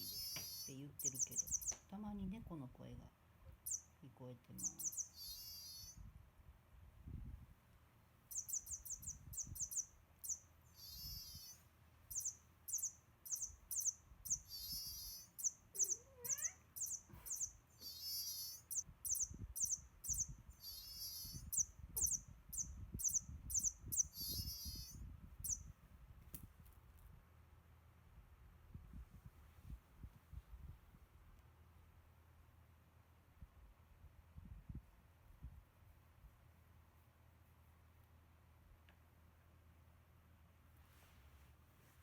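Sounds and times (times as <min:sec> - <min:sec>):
toy mouse electronic squeaks: 0:00.0 - 0:01.8, 0:04.6 - 0:06.0, 0:10.8 - 0:25.0
meow-like cry: 0:15.8 - 0:16.6.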